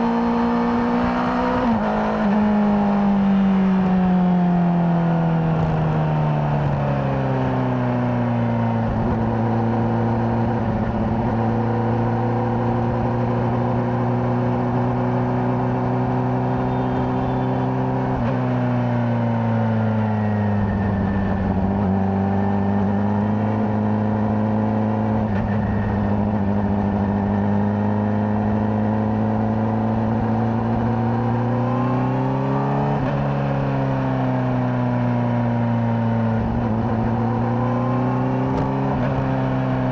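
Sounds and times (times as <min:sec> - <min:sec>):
motorcycle engine running: 0:13.0 - 0:17.8.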